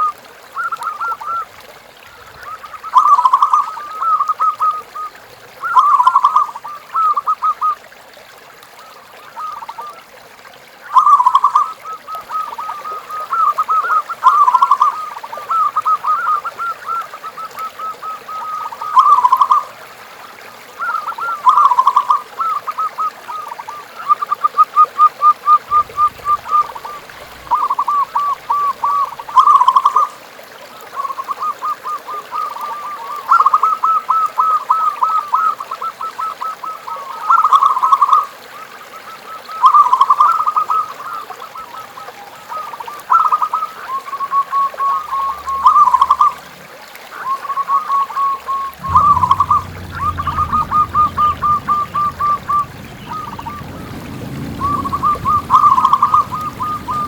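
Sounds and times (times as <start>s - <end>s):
dove cooing: 25.7s - 30.0s, 48.2s - 57.0s.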